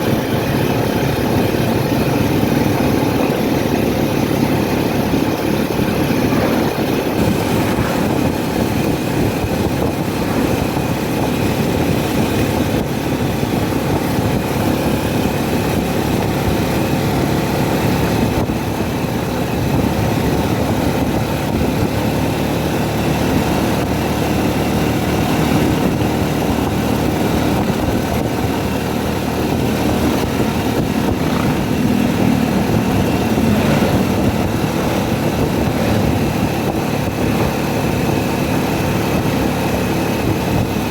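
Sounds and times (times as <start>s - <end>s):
vehicle engine and road noise: 0.0s - 40.9s.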